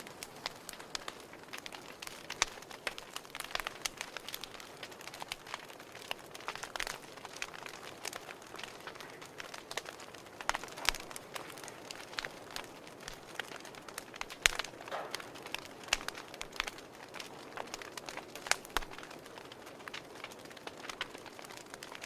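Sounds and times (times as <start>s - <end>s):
fire crackling and popping: 0.0s - 22.0s
soft steady hiss: 0.0s - 22.0s.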